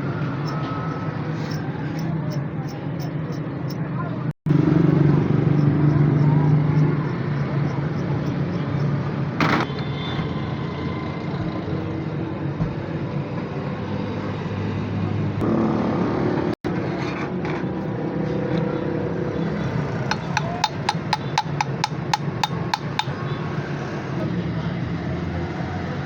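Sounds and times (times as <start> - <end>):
sharp metallic clicks: 20.1 - 23.2.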